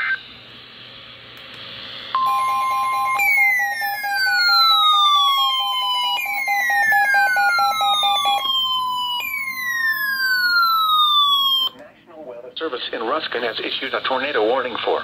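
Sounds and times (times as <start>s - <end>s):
two-tone alert beep: 2.2s - 4.6s
siren wail falling in pitch: 2.2s - 11.8s.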